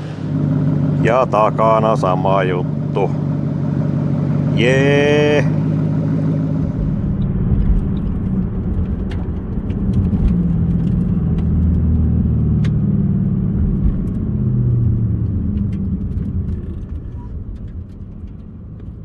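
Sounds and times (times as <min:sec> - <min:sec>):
car engine running at low revs: 0:00.0 - 0:19.0.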